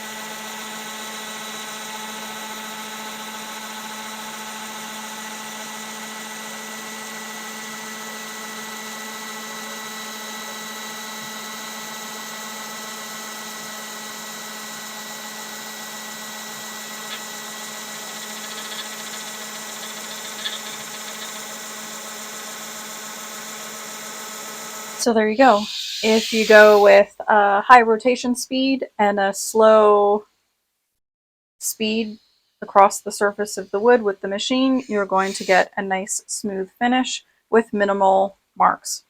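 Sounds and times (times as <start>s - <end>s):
orbital sander humming: 0.0s - 27.0s, 34.6s - 35.6s.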